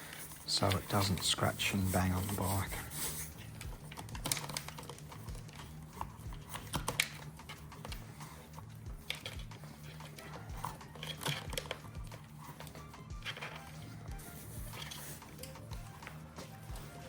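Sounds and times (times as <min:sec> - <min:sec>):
plastic parts clicking: 0:03.3 - 0:16.8.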